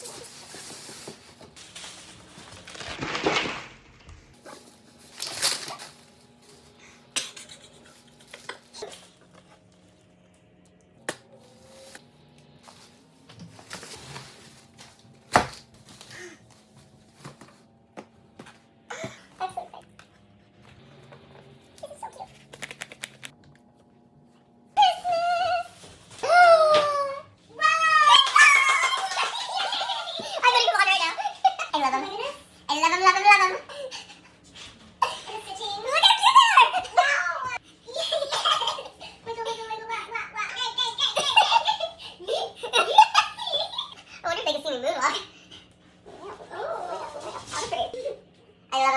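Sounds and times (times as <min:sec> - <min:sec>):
gift wrap rustling: 0:00.0 - 0:06.8, 0:12.6 - 0:17.6.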